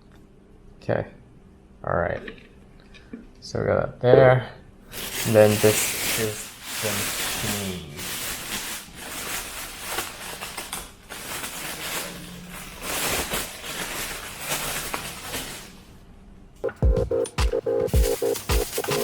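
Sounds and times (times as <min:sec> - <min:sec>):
rustling and scraping packaging: 0:04.9 - 0:16.1, 0:17.8 - 0:19.0
music with a beat: 0:16.6 - 0:19.0.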